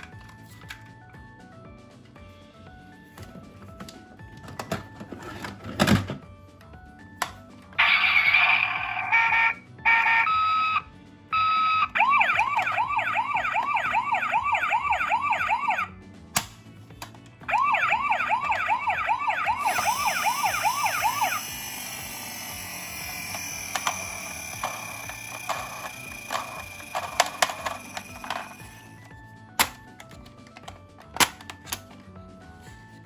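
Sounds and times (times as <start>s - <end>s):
electronic toy sounds: 7.8s - 10.8s, 17.5s - 29.1s
toy siren yelping: 7.8s - 10.8s, 11.4s - 15.9s, 17.5s - 29.0s.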